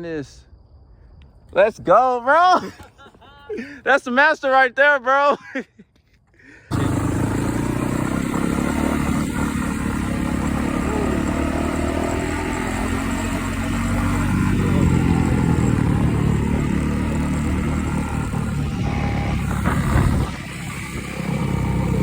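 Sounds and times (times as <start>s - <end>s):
motorcycle engine running: 6.7s - 22.0s.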